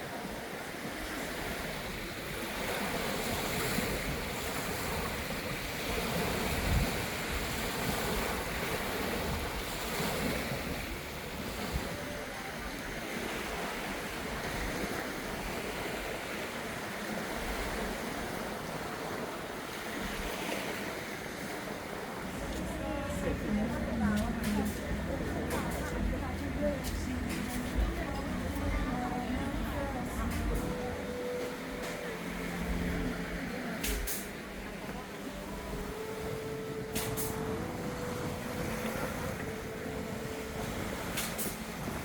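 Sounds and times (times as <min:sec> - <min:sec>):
sea waves washing onto beach: 0:00.0 - 0:42.0
wind buffeting microphone: 0:00.2 - 0:31.2, 0:35.4 - 0:42.0.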